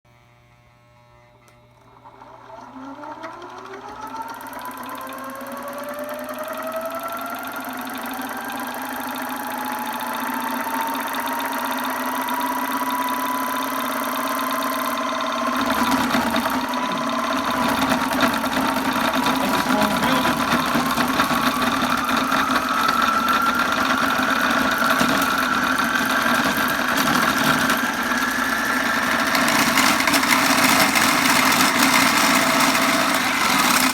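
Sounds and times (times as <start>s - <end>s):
electric motor whine: 0.1s - 33.9s.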